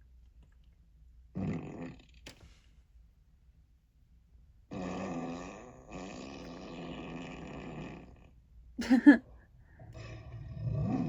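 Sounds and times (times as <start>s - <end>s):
low growling fart sound effect: 1.4s - 2.2s, 4.7s - 8.4s, 9.8s - 11.0s.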